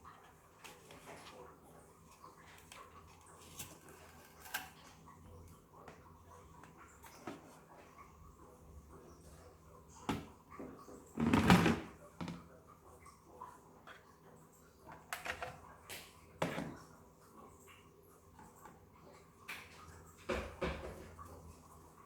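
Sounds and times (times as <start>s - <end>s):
objects knocking and clunking: 10.1s - 12.5s, 20.2s - 21.2s.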